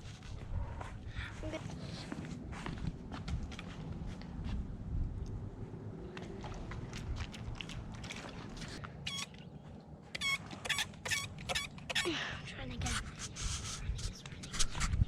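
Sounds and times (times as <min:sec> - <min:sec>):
short high squeaks: 0:09.0 - 0:09.4, 0:10.1 - 0:12.1.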